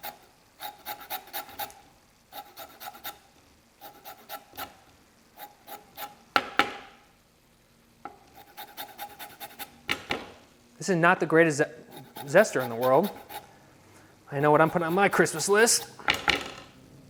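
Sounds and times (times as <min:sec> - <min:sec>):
lemon rind rasping on grater: 0:11.9 - 0:13.4, 0:14.4 - 0:16.0.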